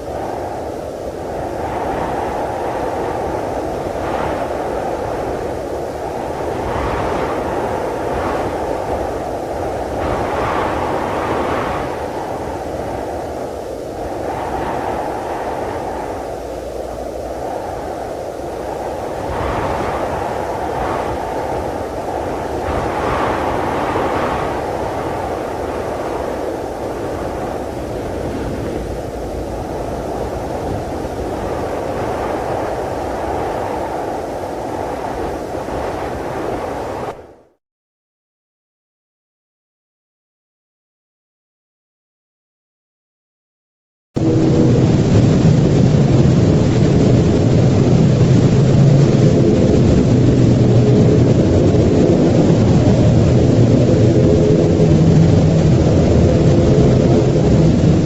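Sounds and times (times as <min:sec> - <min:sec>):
muffled rushing noise: 0:00.0 - 0:37.6, 0:44.2 - 0:58.0
low rumble: 0:06.0 - 0:37.2, 0:44.2 - 0:58.0.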